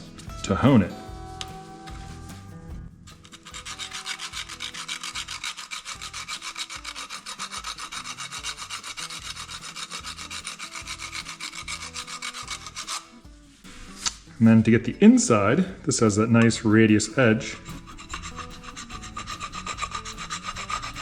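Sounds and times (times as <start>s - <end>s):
hone rasping on steel: 3.1s - 14.2s, 17.2s - 21.0s.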